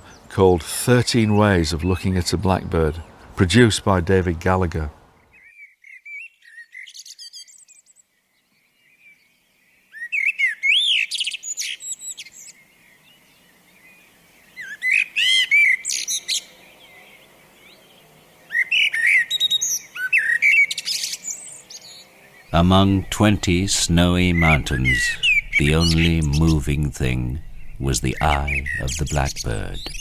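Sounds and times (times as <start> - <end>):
blackbird singing: 5.3 - 30.0
high bird chirps: 18.6 - 30.0.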